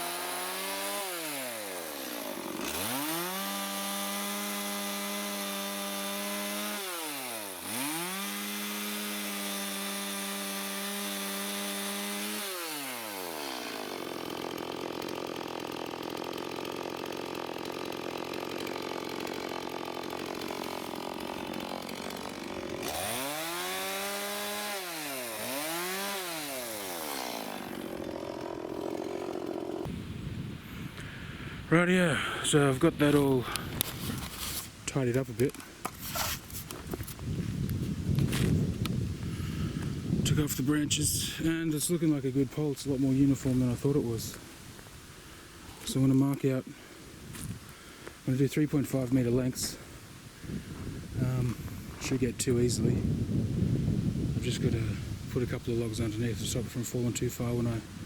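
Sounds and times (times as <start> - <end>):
chainsaw revving and cutting: 0.0 - 29.9, 51.2 - 53.0.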